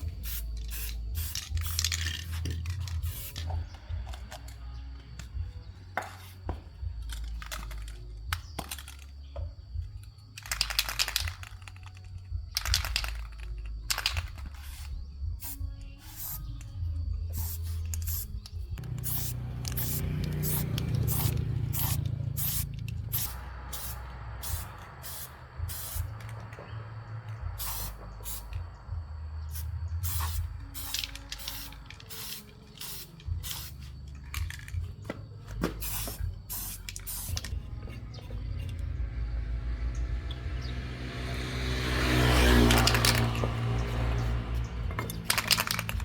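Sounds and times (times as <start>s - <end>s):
hissing spray bursts: 0.0s - 3.6s, 17.4s - 26.4s, 27.5s - 28.6s, 29.5s - 33.9s.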